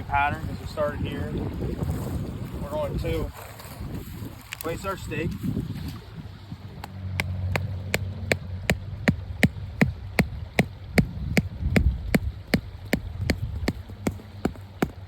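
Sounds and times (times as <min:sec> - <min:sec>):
hammer knocking wooden stake: 0:06.8 - 0:15.0.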